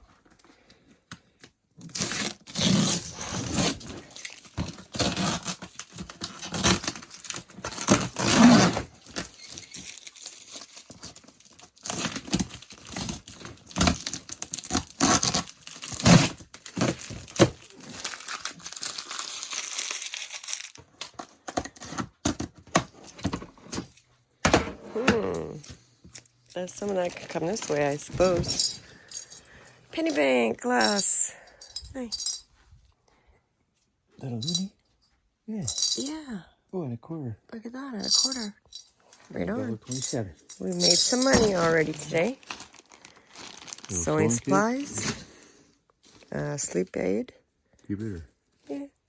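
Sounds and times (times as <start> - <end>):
plastic bags crinkling and rustling: 3.7 - 21.8, 26.5 - 29.3, 39.1 - 45.2.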